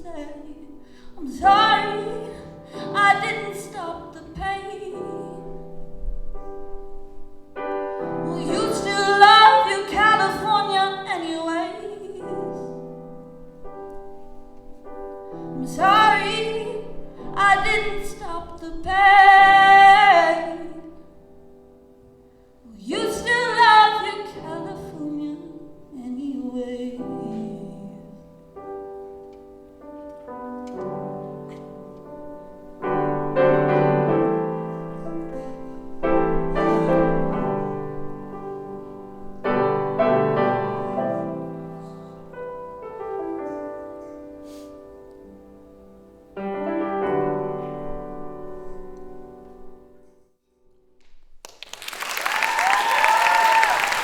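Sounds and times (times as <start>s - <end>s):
woman singing: 0.0s - 5.8s, 8.0s - 12.8s, 15.4s - 21.2s, 22.6s - 28.4s
piano chords: 0.0s - 51.0s.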